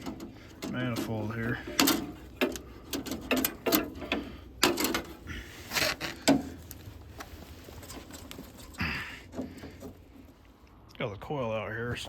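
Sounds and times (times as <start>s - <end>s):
hand tools clicking on metal: 0.0s - 6.8s.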